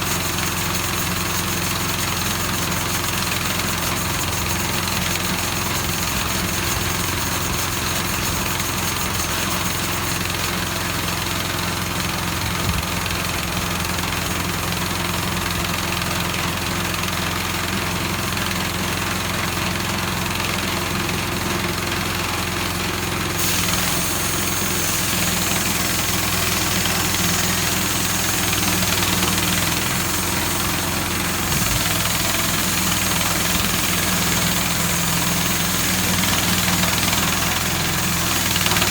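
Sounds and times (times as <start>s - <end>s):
small gas engine running: 0.0s - 38.9s.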